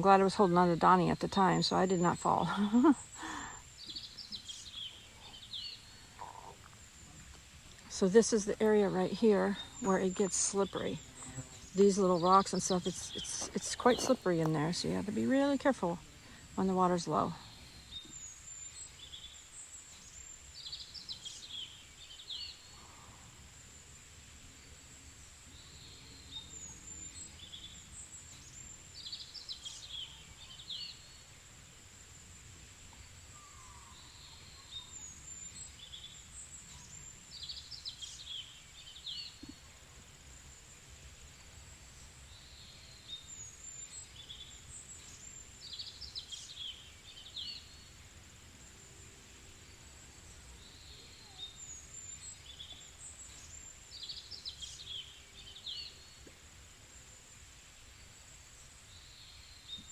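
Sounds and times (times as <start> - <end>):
high insect drone: 0.2 - 59.9
bird chirps: 8.0 - 16.0.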